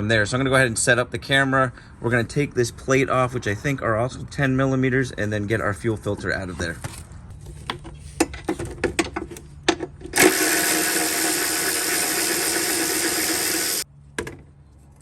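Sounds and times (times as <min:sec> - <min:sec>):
power tool motor running: 0:10.2 - 0:13.8.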